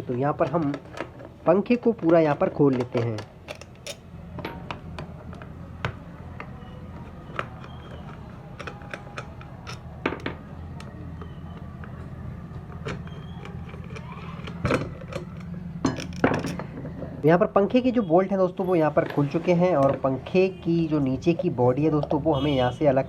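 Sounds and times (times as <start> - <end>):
metal clicks and taps: 2.0 - 16.7.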